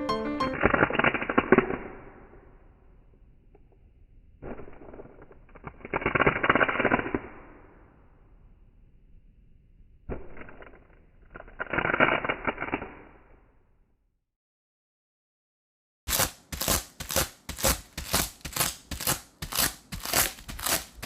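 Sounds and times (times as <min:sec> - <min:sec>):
adhesive tape ripping off: 0:00.4 - 0:02.3, 0:05.5 - 0:07.6, 0:11.4 - 0:13.1, 0:16.1 - 0:21.0.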